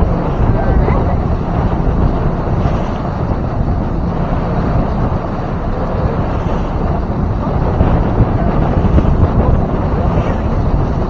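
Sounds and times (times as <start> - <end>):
motorboat motor and water rush: 0.0 - 11.0
wind buffeting microphone: 0.0 - 11.0.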